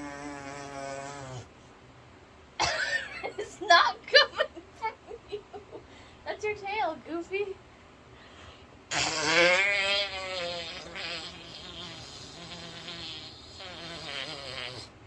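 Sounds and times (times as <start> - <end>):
person buzzing with voice: 8.9 - 15.0.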